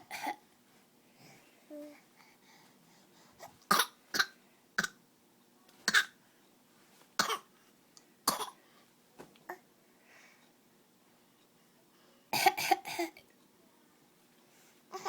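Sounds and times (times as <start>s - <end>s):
baby fake coughing: 0.0s - 0.4s, 3.7s - 5.0s, 5.9s - 6.2s, 7.2s - 7.5s, 8.3s - 8.6s, 12.3s - 13.2s.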